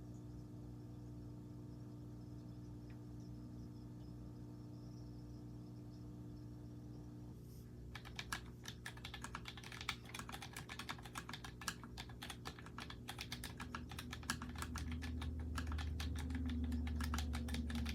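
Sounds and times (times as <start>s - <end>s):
mechanical keyboard typing: 7.9s - 17.9s.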